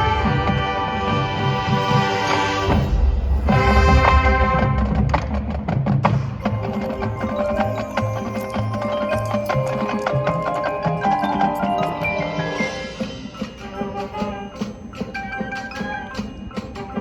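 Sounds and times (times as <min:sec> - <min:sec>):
marching band held chords: 0:00.0 - 0:17.0.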